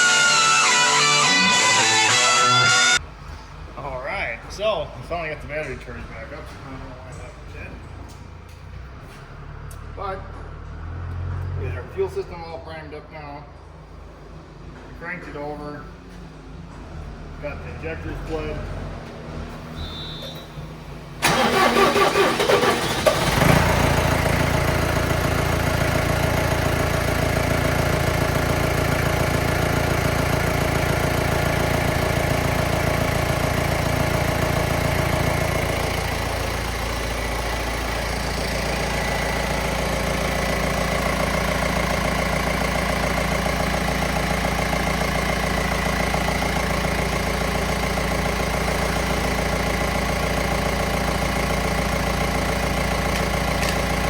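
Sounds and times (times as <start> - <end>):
diesel engine cranking and starting: 0.0 - 3.0, 21.1 - 54.0
diesel engine idling: 0.0 - 4.0, 21.2 - 54.0.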